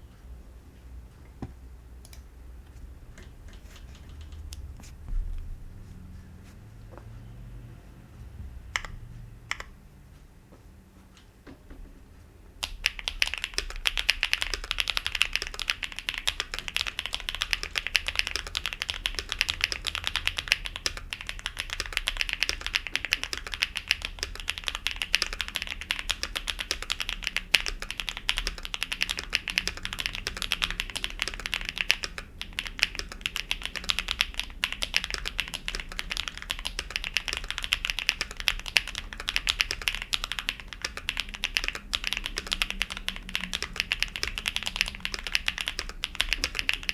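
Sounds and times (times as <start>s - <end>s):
fast mechanical keyboard typing: 3.2s - 4.7s, 12.6s - 46.9s.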